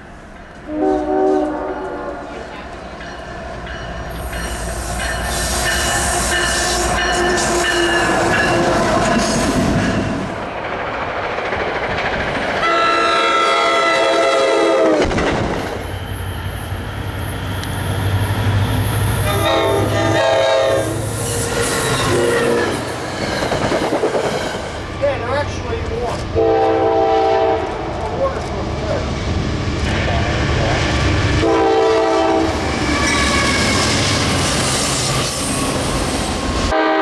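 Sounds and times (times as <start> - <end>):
moving trains: 0.0 - 37.0
train horns: 0.6 - 2.7, 4.1 - 10.1, 12.6 - 15.5, 19.1 - 22.9, 26.3 - 28.0, 31.3 - 34.3, 36.6 - 37.0.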